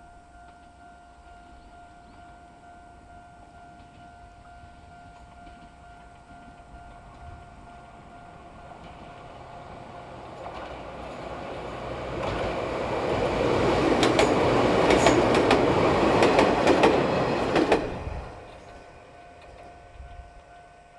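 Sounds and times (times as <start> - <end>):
electric train passing: 0.0 - 20.9
wheel clacks over rail joints: 8.7 - 19.8.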